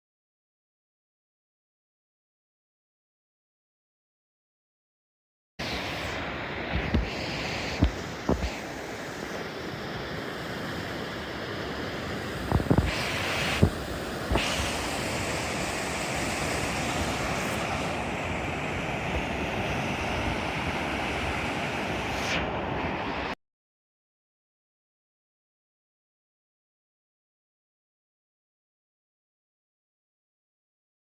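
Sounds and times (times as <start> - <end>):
river rushing: 5.6 - 23.4.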